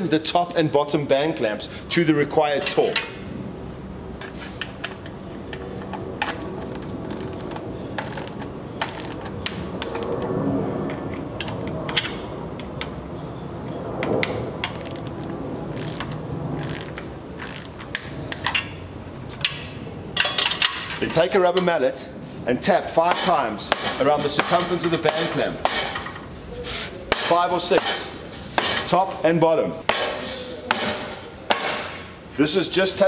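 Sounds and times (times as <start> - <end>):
ratcheting torque wrench clicking: 6.6 - 10.0, 14.6 - 18.5.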